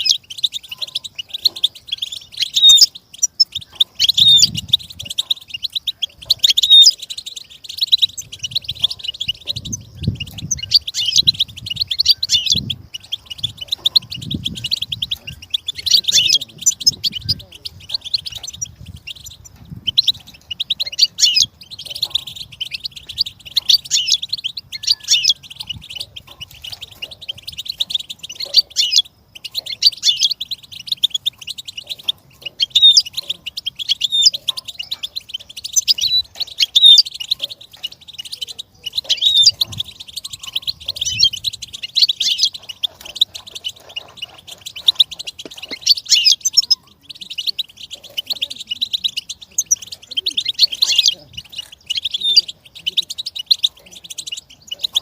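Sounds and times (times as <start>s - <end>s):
bird twittering song: 0.0s - 55.0s.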